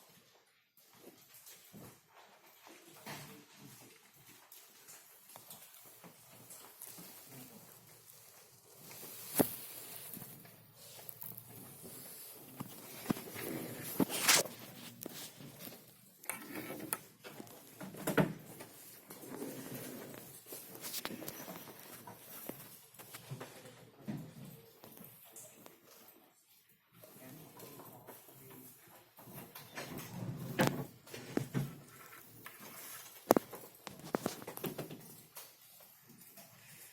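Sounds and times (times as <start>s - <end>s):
packaging rustling: 8.6s - 15.6s.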